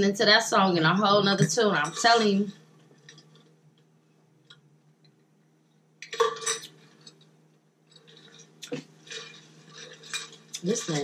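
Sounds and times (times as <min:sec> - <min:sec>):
dishes and cutlery clinking: 0:06.0 - 0:07.3, 0:07.9 - 0:11.0
dishes clattering: 0:06.0 - 0:07.3, 0:07.9 - 0:11.0.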